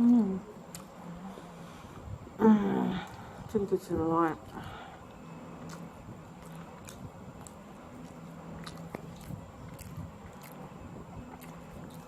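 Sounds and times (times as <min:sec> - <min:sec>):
person chewing food: 0:04.5 - 0:12.0.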